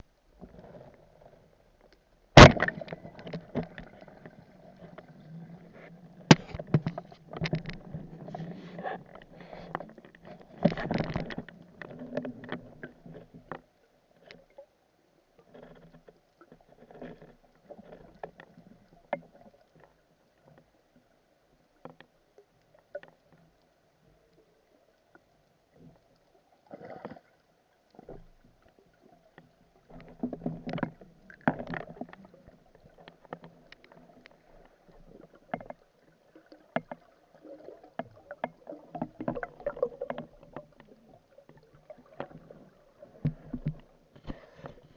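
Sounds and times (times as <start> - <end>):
water sloshing and splashing: 2.3 - 14.8, 25.0 - 44.9
sharp clicks and knocks: 6.3 - 8.0.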